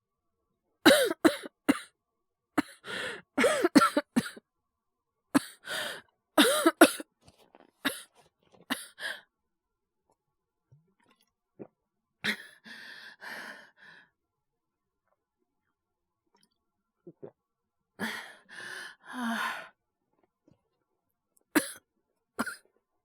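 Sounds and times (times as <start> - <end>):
man coughing: 0.9 - 1.8, 3.4 - 4.4, 6.4 - 7.0.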